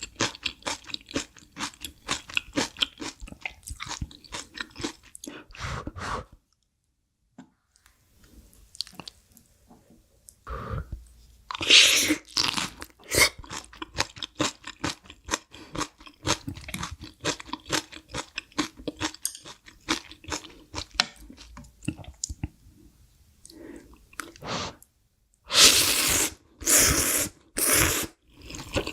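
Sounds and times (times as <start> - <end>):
crunchy chewing of food: 0.0 - 5.3, 11.5 - 22.5.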